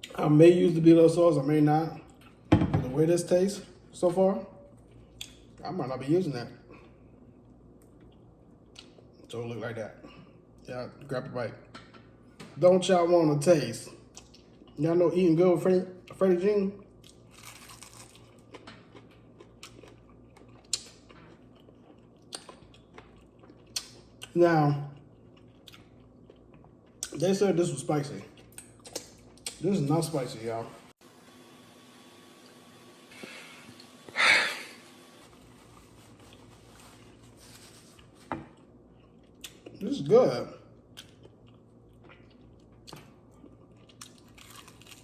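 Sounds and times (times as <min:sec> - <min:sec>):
chewing fried chicken: 0:16.9 - 0:27.2, 0:40.7 - 0:45.0.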